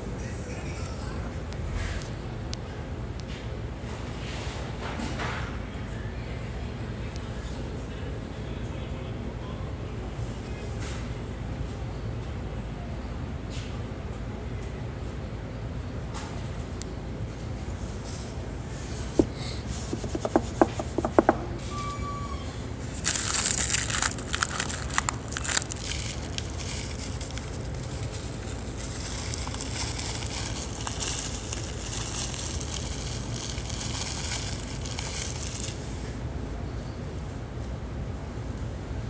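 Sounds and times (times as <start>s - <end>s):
scraping and crinkling of parts: 19.0s - 21.6s, 22.9s - 36.0s.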